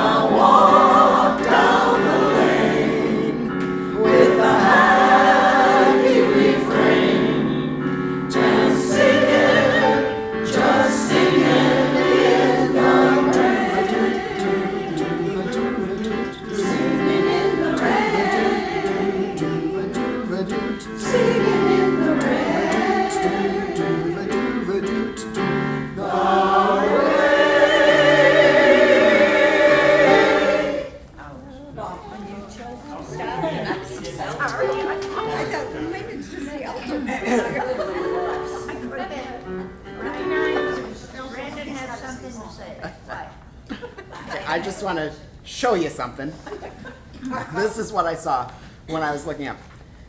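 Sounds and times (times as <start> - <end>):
choir singing: 0.0 - 31.2, 33.0 - 41.1.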